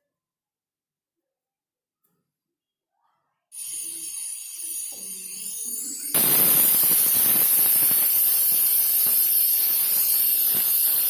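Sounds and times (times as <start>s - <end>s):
cooking hiss on stove: 3.6s - 11.0s.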